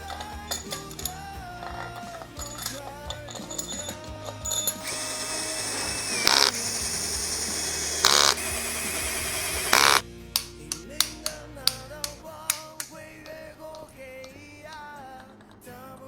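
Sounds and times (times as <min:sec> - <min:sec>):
handheld power tool running: 0:00.0 - 0:11.2
background music: 0:00.0 - 0:16.0
sharp clicks: 0:04.0 - 0:15.7.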